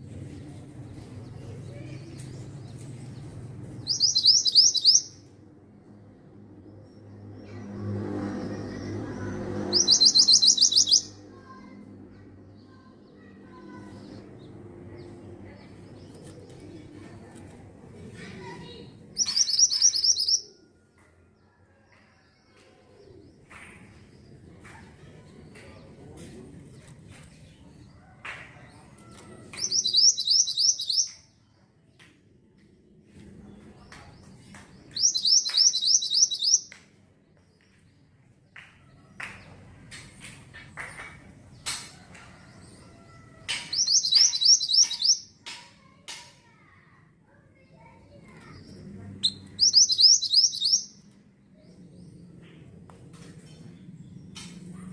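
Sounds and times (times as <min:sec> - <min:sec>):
bird chirps: 0:03.9 - 0:05.3, 0:09.7 - 0:11.2, 0:19.2 - 0:20.6, 0:29.5 - 0:31.3, 0:34.9 - 0:36.8, 0:43.5 - 0:45.3, 0:49.2 - 0:51.0.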